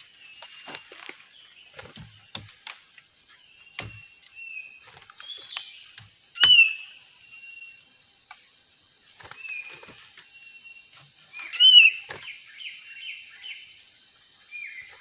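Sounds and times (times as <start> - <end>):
bird whistled calls: 6.4 - 7.8, 10.5 - 13.6.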